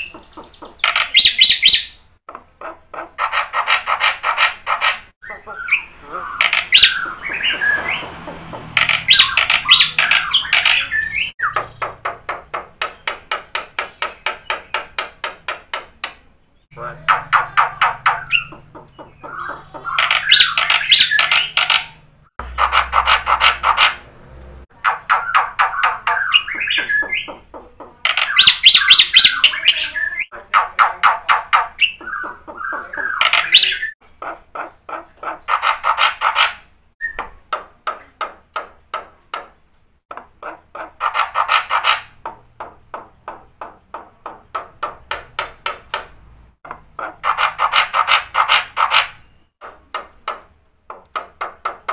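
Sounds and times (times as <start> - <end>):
starling singing chattering phrases: 5.2 - 11.8, 16.7 - 22.1, 25.0 - 35.5.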